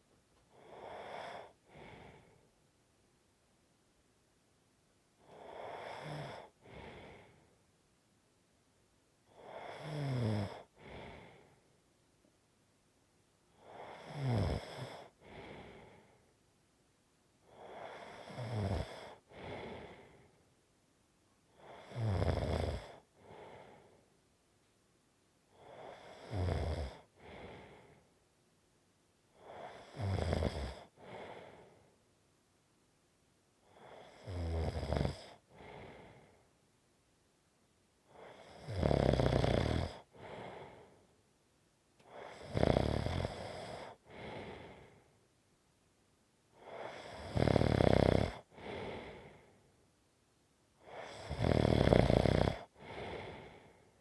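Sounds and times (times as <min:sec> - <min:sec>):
person snoring: 0:05.3 - 0:07.3, 0:09.4 - 0:11.3, 0:13.6 - 0:16.0, 0:17.5 - 0:20.2, 0:21.7 - 0:23.9, 0:25.6 - 0:27.9, 0:29.4 - 0:31.6, 0:33.8 - 0:36.3, 0:38.1 - 0:40.9, 0:42.1 - 0:44.9, 0:46.6 - 0:49.5, 0:50.8 - 0:53.7.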